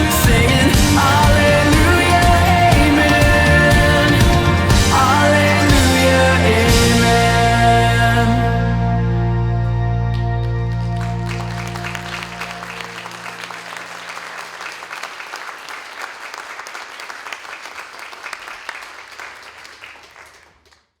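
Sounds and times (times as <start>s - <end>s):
audience applauding: 0.0s - 6.8s, 9.9s - 21.0s
band held chord: 0.0s - 14.4s.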